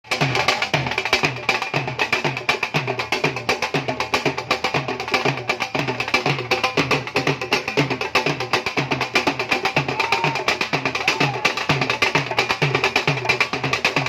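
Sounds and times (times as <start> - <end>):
dhol drumming: 0.0 - 14.0.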